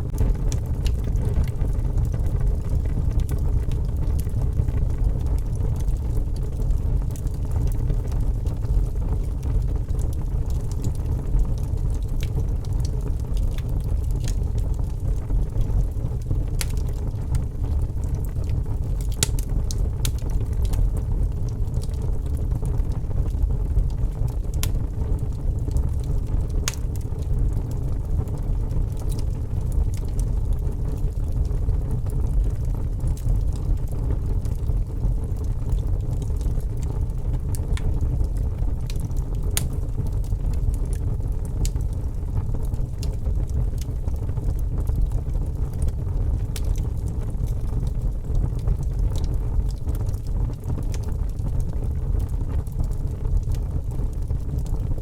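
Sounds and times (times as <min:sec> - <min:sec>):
low rumble: 0:00.0 - 0:06.3
wood fire crackling: 0:00.0 - 0:55.0.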